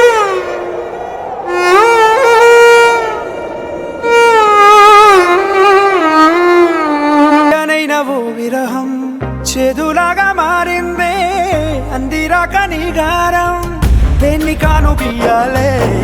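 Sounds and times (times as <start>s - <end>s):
bowed violin-like melody: 0.0s - 7.7s.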